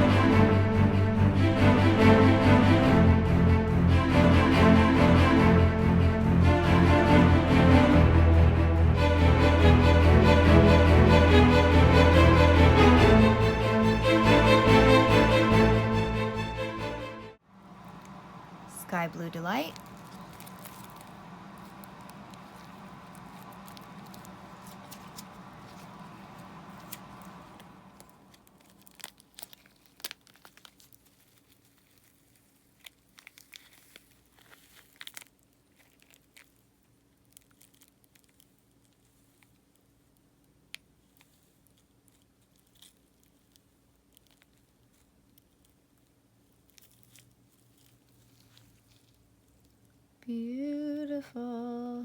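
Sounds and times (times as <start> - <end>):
steady humming tone: 0.0 - 28.2.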